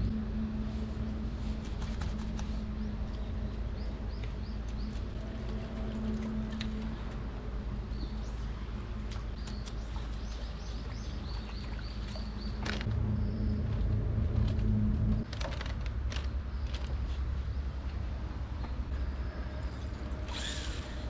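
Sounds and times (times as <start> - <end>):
steady low hum: 0.0 - 21.0
birds chirping: 2.3 - 5.7, 7.7 - 13.9.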